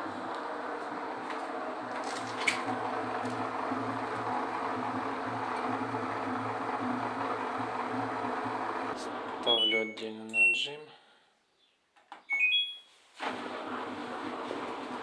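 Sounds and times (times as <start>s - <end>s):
washing machine humming: 0.0s - 9.9s, 13.2s - 15.0s.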